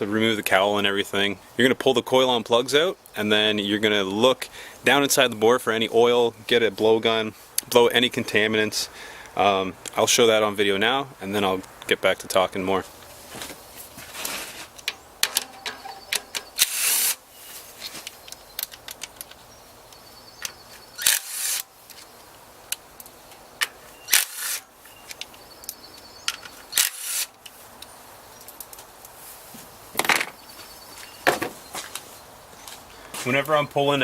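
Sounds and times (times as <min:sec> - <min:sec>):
scratchy rubbing: 0:13.2 - 0:14.7.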